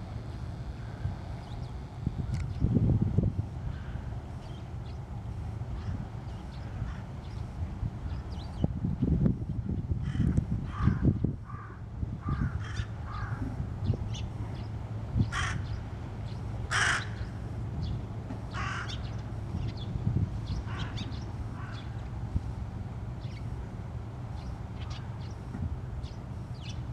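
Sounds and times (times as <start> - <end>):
crows cawing: 10.0 - 13.5, 15.3 - 15.8, 16.7 - 17.4, 18.5 - 19.1, 20.7 - 22.0.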